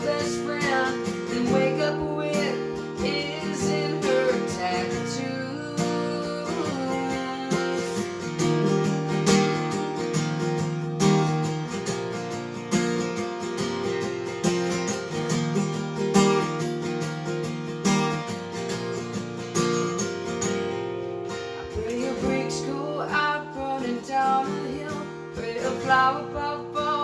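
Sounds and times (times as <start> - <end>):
acoustic guitar strumming chords: 0.0 - 27.0.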